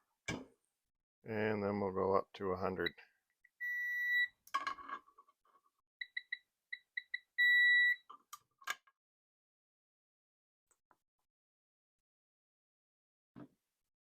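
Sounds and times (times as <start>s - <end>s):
long steady beep: 3.6s - 4.3s, 6.0s - 8.0s.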